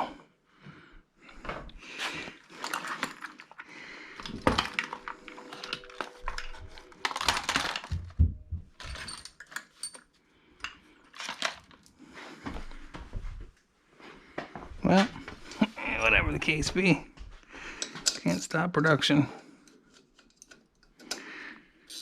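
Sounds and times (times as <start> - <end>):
metal hardware clinking: 8.8 - 10.1.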